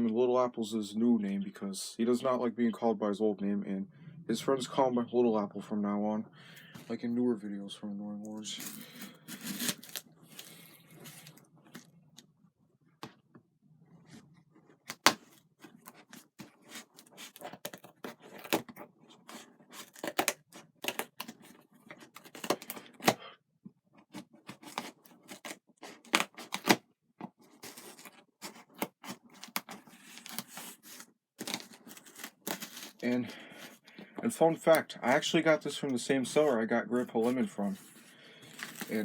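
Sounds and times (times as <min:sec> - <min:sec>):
plastic and card tearing: 0:08.5 - 0:11.9, 0:14.8 - 0:23.2, 0:24.1 - 0:26.8, 0:27.6 - 0:33.8, 0:37.0 - 0:39.0
packaging clicks and snips: 0:22.0 - 0:23.2.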